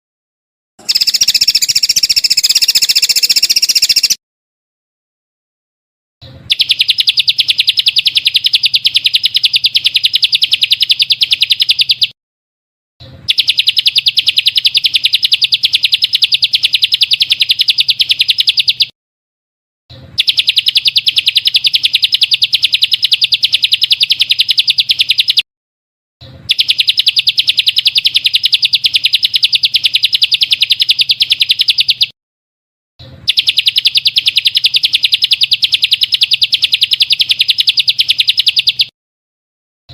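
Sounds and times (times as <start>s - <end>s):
songbird trilling: 0.8s - 4.2s.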